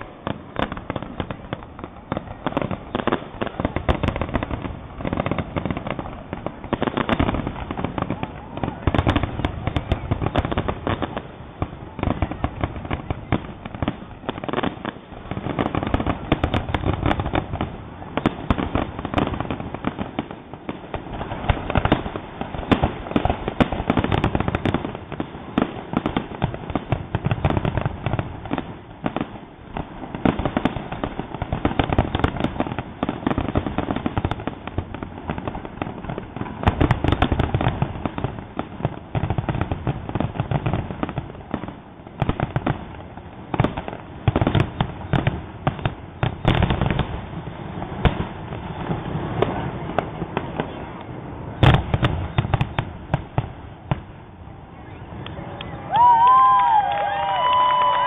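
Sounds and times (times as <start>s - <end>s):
fireworks barrage bursts and booms: 0.0s - 58.0s
fireworks crackling: 0.0s - 58.0s.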